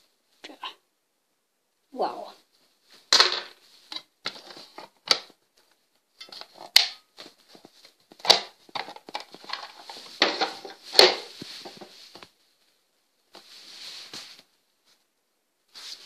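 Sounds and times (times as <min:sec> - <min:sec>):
sharp plastic snaps: 0:08.1 - 0:09.6.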